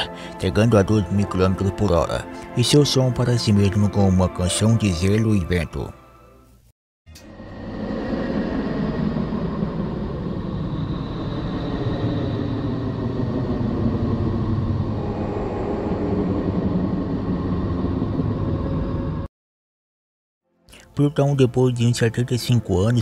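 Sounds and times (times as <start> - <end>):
deep rumbling drone: 7.1 - 19.3.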